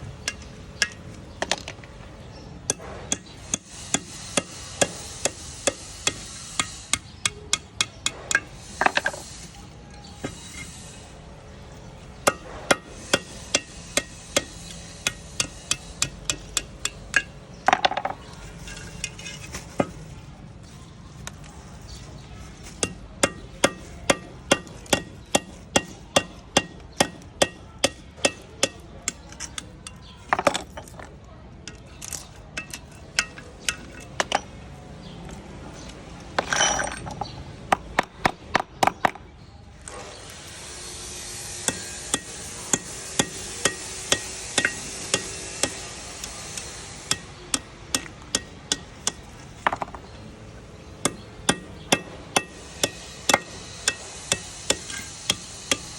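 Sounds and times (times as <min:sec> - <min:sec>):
hammer blows on metal: 0:02.7 - 0:11.1, 0:12.2 - 0:20.0, 0:22.1 - 0:30.7, 0:40.5 - 0:50.2, 0:50.8 - 0:55.9
steady hiss: 0:03.4 - 0:17.2, 0:39.9 - 0:49.8, 0:52.2 - 0:55.9.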